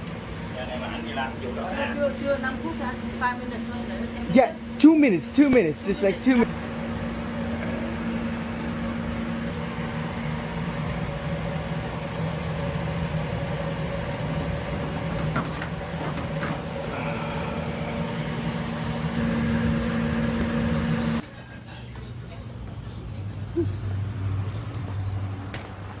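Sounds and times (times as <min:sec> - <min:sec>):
machine humming: 0:00.0 - 0:21.3.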